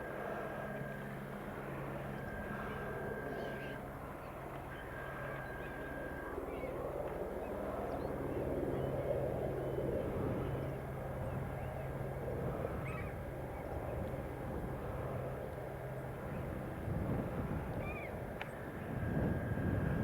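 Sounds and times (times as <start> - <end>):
faint gull calls: 2.2 - 7.2, 12.8 - 13.2.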